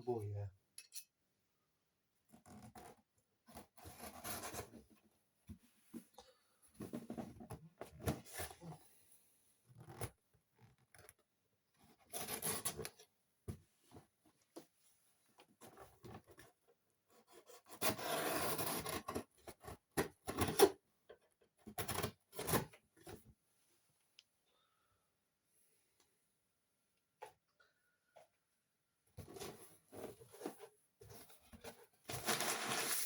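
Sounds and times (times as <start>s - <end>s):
cardboard and tape scraping: 17.3s - 20.8s, 29.2s - 33.0s.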